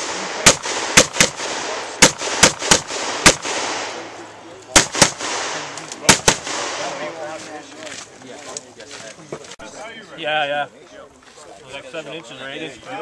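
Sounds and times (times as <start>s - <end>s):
rifle shots: 0.0s - 7.2s.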